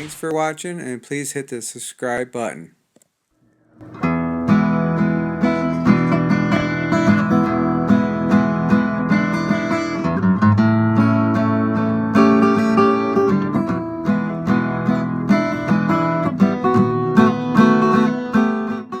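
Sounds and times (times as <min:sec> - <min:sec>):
acoustic guitar strumming chords: 0:03.8 - 0:19.0.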